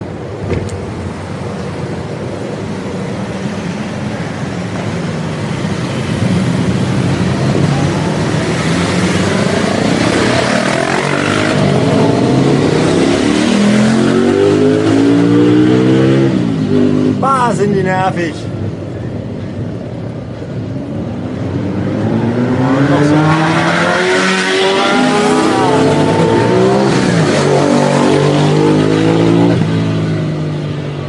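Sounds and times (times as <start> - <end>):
motorcycle engine revving: 8.1 - 17.2, 21.7 - 30.2.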